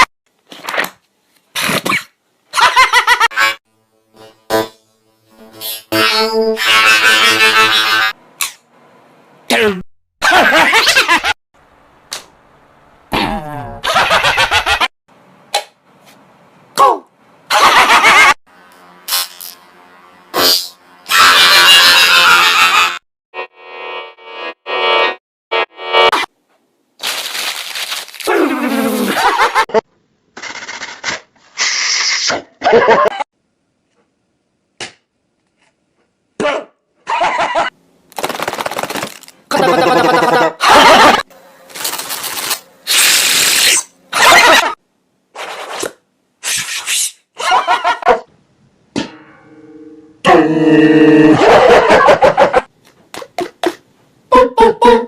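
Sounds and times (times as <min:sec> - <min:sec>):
loud buzzing tone: 0:03.3 - 0:08.2, 0:18.5 - 0:26.2
harsh mouth hissing bursts: 0:42.9 - 0:43.9.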